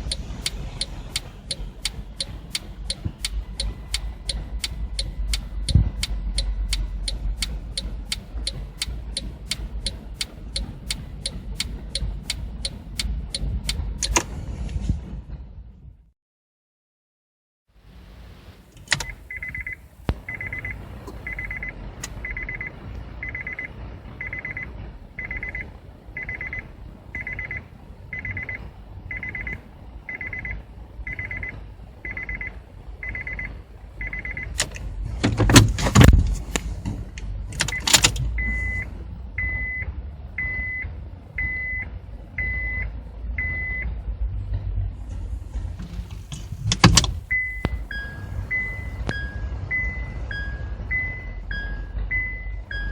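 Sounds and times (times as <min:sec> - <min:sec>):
repeating single-pitched beep: 0:19.3 - 0:25.6, 0:28.2 - 0:31.5, 0:38.4 - 0:38.8, 0:41.4 - 0:41.8, 0:47.3 - 0:52.9.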